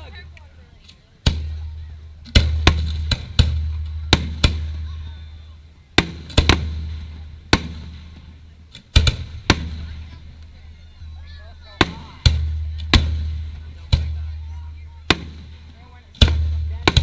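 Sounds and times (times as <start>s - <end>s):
rumble after fireworks: 1.2s - 17.0s
fireworks booming: 5.9s - 10.5s, 11.6s - 17.0s.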